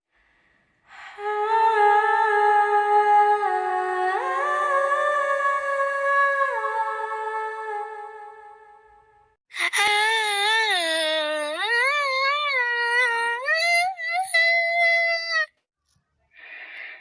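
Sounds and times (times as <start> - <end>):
high voice humming: 9.5 - 15.6.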